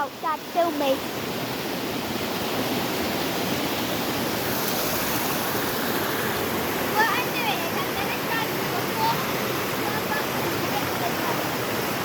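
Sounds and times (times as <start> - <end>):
river rushing over rocks: 0.0 - 12.0.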